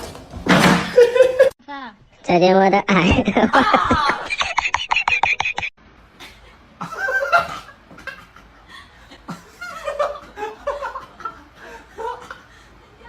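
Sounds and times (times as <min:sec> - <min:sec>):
person laughing: 0:03.1 - 0:05.7.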